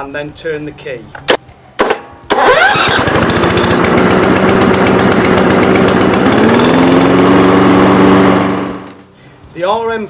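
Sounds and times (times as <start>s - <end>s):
lawnmower engine running: 2.3s - 9.1s.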